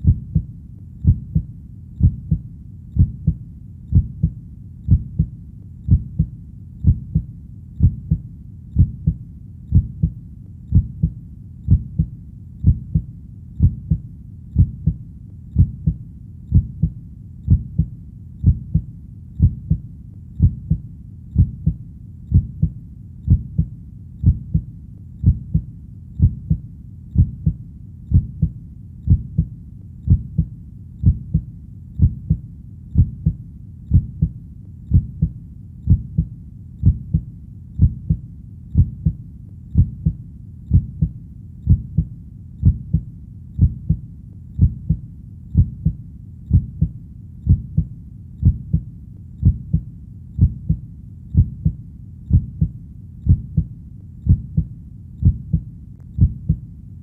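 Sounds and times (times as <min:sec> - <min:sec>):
heartbeat double thump: 0:00.0 - 0:02.4, 0:03.0 - 0:05.3, 0:05.9 - 0:08.2, 0:08.8 - 0:14.0, 0:15.6 - 0:19.8, 0:20.4 - 0:20.8, 0:21.4 - 0:26.6, 0:30.1 - 0:32.4, 0:33.0 - 0:37.2, 0:39.8 - 0:41.1, 0:41.7 - 0:44.0, 0:44.6 - 0:45.0, 0:45.6 - 0:46.9, 0:47.5 - 0:48.8, 0:49.4 - 0:49.8, 0:50.4 - 0:50.8, 0:51.4 - 0:52.7, 0:53.3 - 0:55.6, 0:56.2 - 0:56.6.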